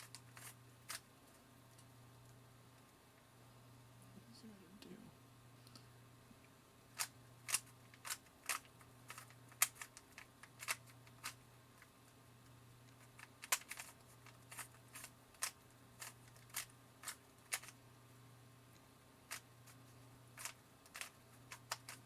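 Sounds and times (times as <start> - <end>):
puzzle cube clacking: 0.0 - 1.9, 6.9 - 12.0, 12.8 - 17.8, 18.7 - 22.0.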